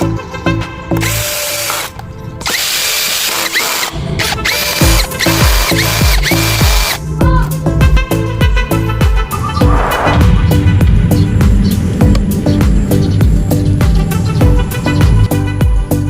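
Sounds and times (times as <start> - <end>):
background music: 0.0 - 16.0
power tool motor whining: 1.0 - 7.0.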